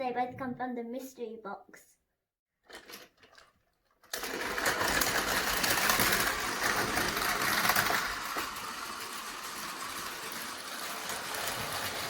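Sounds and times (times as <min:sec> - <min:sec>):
toy train motors whirring: 0:04.0 - 0:12.0.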